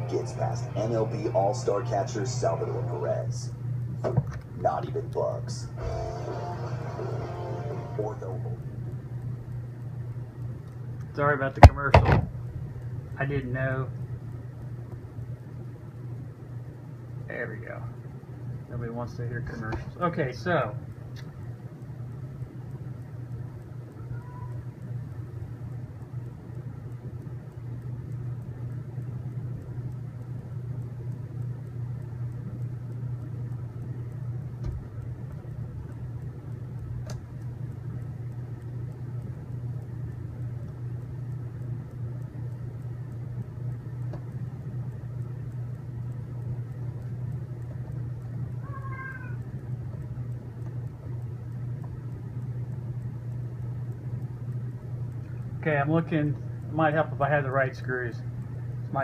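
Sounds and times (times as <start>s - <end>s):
low hum: 0.0s - 59.0s
faint clicks: 8.9s - 11.1s, 20.9s - 59.0s.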